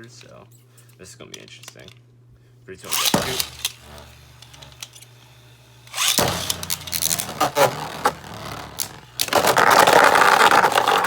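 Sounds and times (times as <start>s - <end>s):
continuous grinding scrape: 2.8s - 11.0s
spinning tops clattering and scraping: 2.9s - 11.0s.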